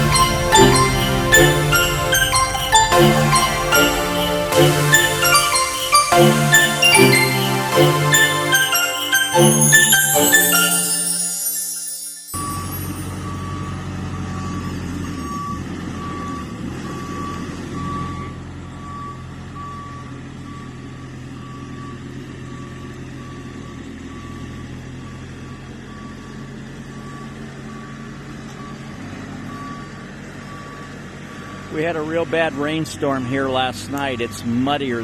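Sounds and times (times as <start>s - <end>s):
backup alarm beeping: 0.0s - 11.4s, 12.4s - 20.7s.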